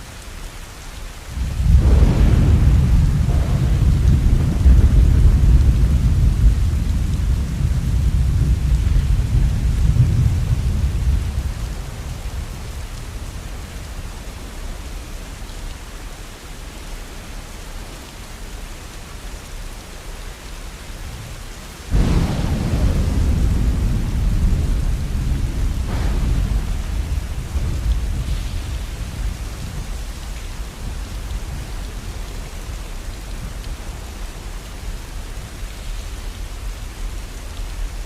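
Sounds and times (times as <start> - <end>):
rain falling: 0.0 - 38.0
thunder rumbling: 1.3 - 14.8, 21.9 - 38.0.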